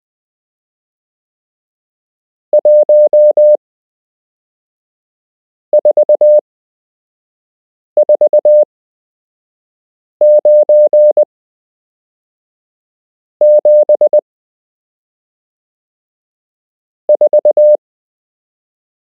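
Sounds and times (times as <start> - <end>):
morse code tone: 2.6 - 3.6, 5.8 - 6.4, 8.0 - 8.6, 10.2 - 11.3, 13.4 - 14.2, 17.2 - 17.8.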